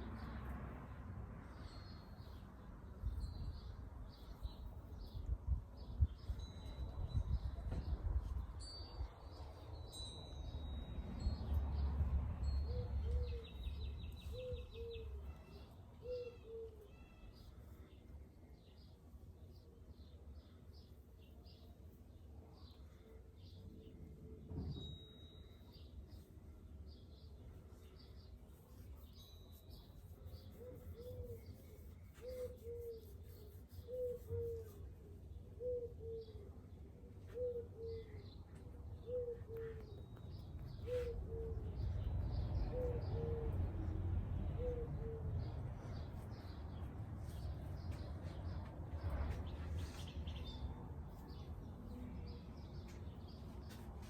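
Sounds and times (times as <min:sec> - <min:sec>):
faint high bird chirps: 0:12.5 - 0:19.0, 0:27.0 - 0:36.6.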